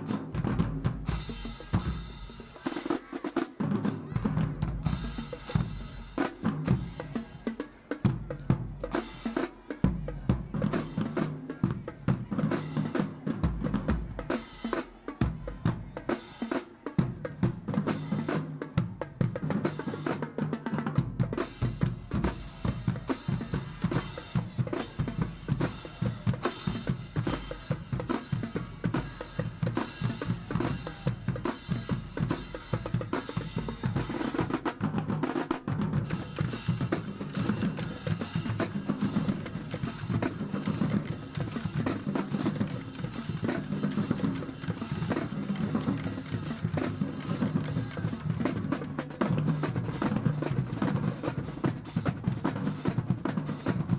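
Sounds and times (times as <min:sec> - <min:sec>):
snare drum rolls: 0:17.4 - 0:53.9.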